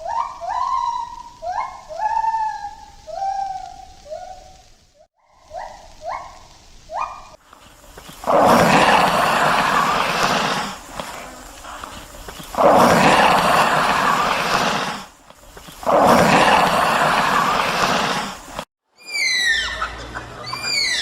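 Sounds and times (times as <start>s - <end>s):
large animal calling: 19.0s - 21.0s.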